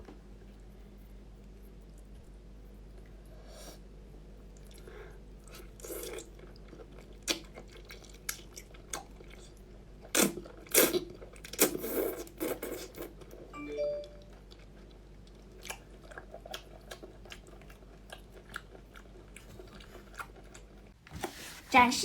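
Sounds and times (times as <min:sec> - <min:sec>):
person chewing and biting: 0:14.5 - 0:20.9.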